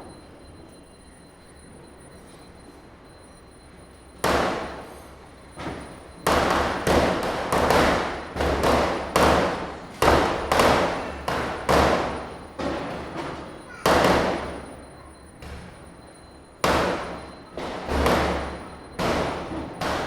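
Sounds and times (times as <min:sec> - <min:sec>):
firecrackers banging: 0:06.3 - 0:14.6.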